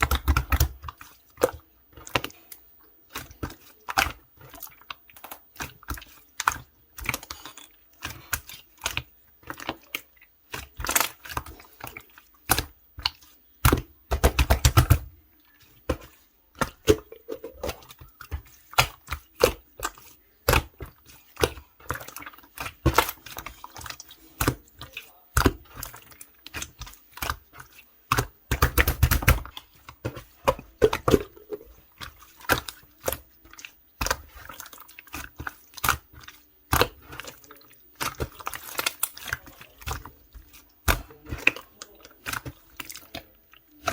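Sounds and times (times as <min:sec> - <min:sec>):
slime squished by hand: 0:00.0 - 0:43.9.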